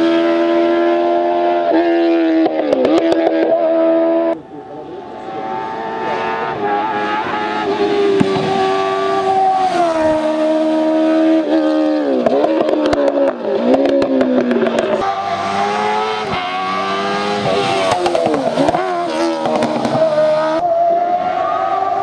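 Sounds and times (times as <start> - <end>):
race car engine revving: 0.0 - 22.0
sharp exhaust cracks: 6.6 - 11.5, 12.1 - 20.6.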